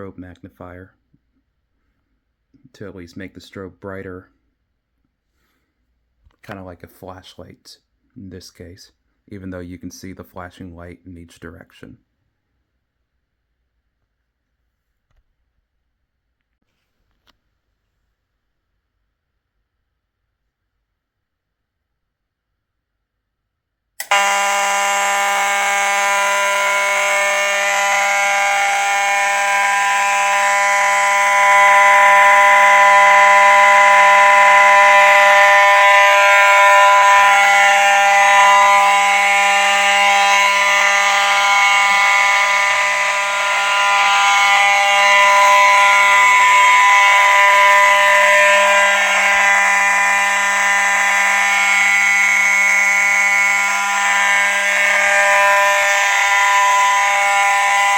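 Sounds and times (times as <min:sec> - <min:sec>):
fire alarm horn buzzing: 0:24.0 - 0:57.9.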